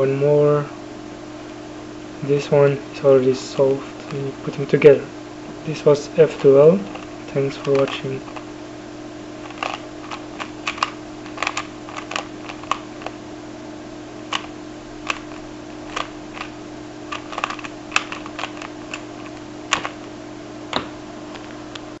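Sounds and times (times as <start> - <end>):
low electrical hum: 0.0 - 22.0
plastic puzzle cube clicking: 9.5 - 13.1, 15.1 - 16.5, 17.1 - 20.0.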